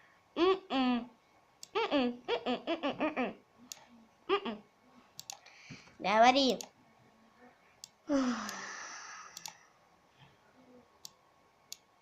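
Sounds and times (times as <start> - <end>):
sharp clicks: 5.2 - 5.6, 9.3 - 9.6, 11.0 - 11.9
girl sighing: 8.1 - 9.4.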